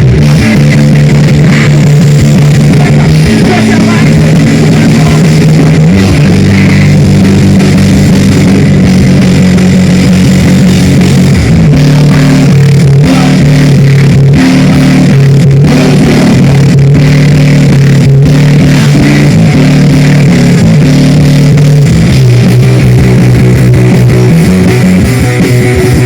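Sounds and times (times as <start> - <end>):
bass holding low notes: 0.0 - 26.0
distorted electric guitars: 0.0 - 26.0.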